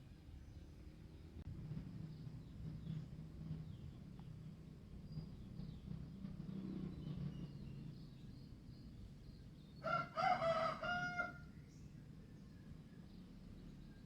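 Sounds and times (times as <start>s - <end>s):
faint small birds calling: 2.0s - 14.0s
rooster crowing: 9.8s - 11.5s.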